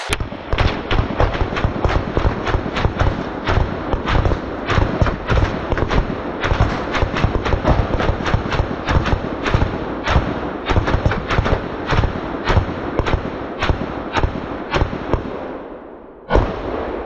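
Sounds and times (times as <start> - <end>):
volley of gunfire: 0.0 - 15.7, 16.3 - 17.0.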